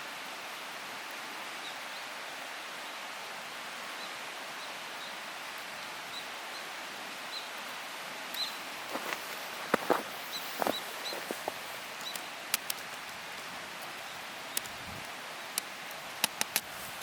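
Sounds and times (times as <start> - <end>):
fire crackles and pops: 8.3 - 17.0
wood fire hissing: 8.4 - 17.0.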